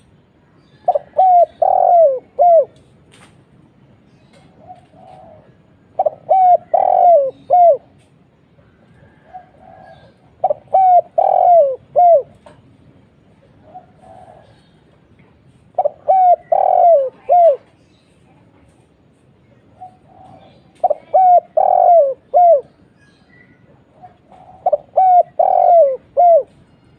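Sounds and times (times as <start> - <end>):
dove cooing: 0.7 - 2.8, 4.4 - 8.0, 8.9 - 12.6, 13.6 - 14.8, 15.7 - 17.8, 19.7 - 22.9, 23.8 - 26.9.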